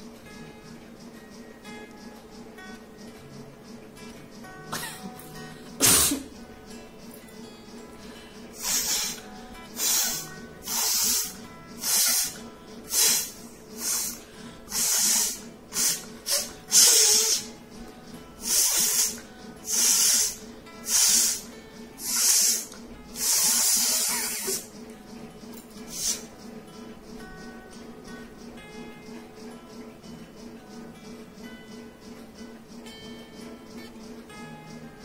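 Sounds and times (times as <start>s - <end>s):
person snorting through nose: 5.8s - 6.3s, 8.6s - 17.5s, 23.2s - 24.7s.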